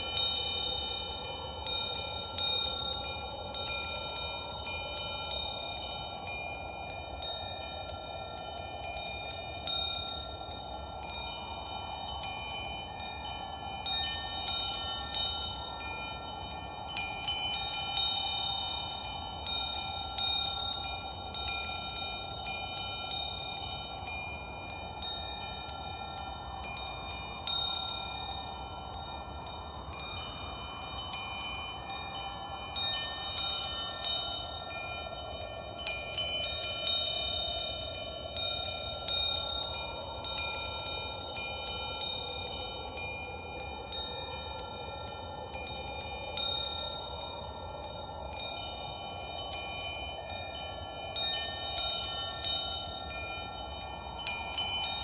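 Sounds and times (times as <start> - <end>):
soft whooshing hiss: 0.0 - 55.0
wind chimes tinkling: 0.0 - 55.0.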